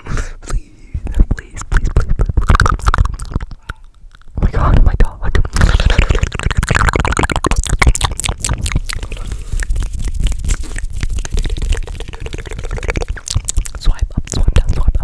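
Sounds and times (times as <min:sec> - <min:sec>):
mouth clicks and pops: 0:01.0 - 0:15.0
steady low rumble: 0:04.3 - 0:15.0.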